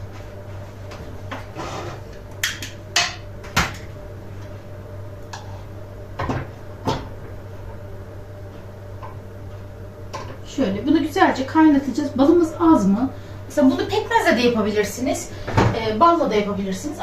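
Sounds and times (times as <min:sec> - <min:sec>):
steady low hum: 0:00.0 - 0:17.0
metal pot scraping stove: 0:01.5 - 0:02.1.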